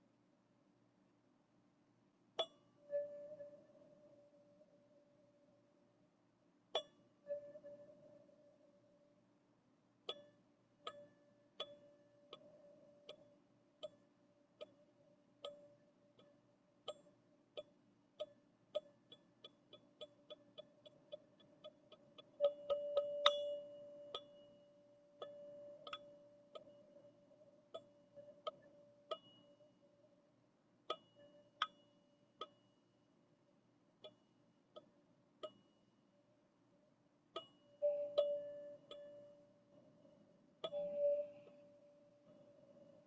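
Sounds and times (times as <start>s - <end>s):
struck tube ringing tone: 37.4s - 39.9s, 40.6s - 43.0s.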